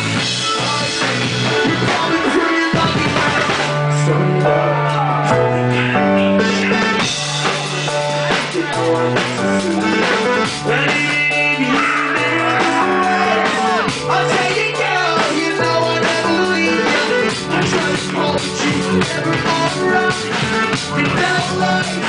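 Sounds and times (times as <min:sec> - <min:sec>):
drum kit: 0:00.0 - 0:22.0
guitar: 0:00.0 - 0:22.0
singing: 0:08.5 - 0:22.0.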